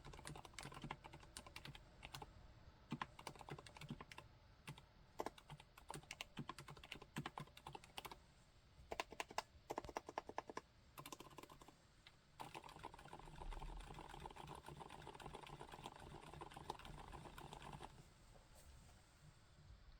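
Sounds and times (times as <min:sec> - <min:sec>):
mechanical keyboard typing: 0:00.0 - 0:02.3, 0:02.9 - 0:08.2, 0:08.9 - 0:11.7, 0:12.4 - 0:18.0.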